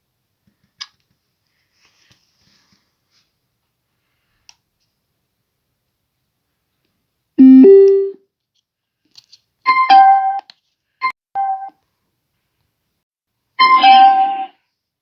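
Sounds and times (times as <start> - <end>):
two-note rising chime: 7.4 - 8.1
button clicks: 7.4 - 8.2
synthetic tones: 7.4 - 8.2.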